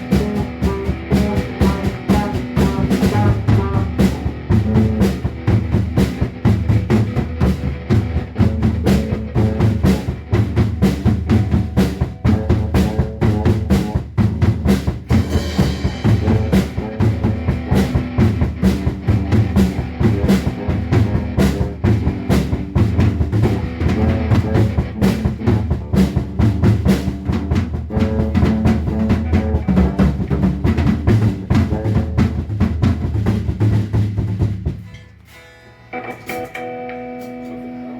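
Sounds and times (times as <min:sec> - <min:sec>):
low bass notes: 0:00.0 - 0:34.6
kick and snare drums: 0:00.0 - 0:34.9
band music: 0:00.0 - 0:37.9.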